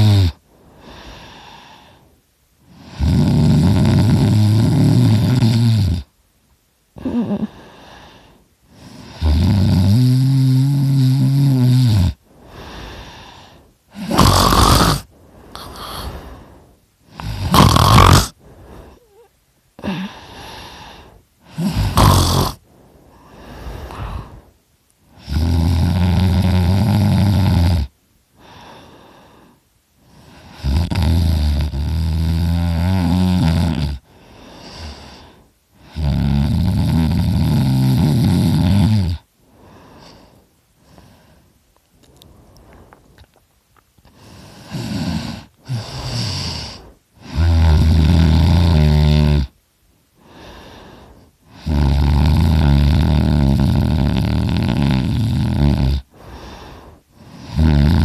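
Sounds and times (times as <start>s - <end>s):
man snoring loudly: 0.0s - 1.0s, 2.7s - 6.1s, 8.8s - 13.2s, 13.9s - 16.4s, 17.1s - 18.4s, 21.5s - 22.6s, 25.2s - 28.6s, 30.3s - 39.3s, 44.2s - 49.6s, 51.5s - 56.2s, 57.2s - 58.0s
quiet breaths: 0.0s - 58.0s
breathy snorts: 11.0s - 24.5s, 44.0s - 49.5s, 50.2s - 58.0s.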